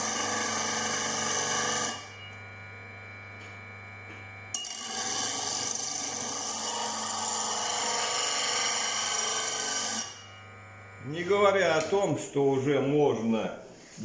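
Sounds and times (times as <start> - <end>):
grinder motor humming: 0.0 - 12.1
steel blade grinding on wheel: 4.6 - 10.6.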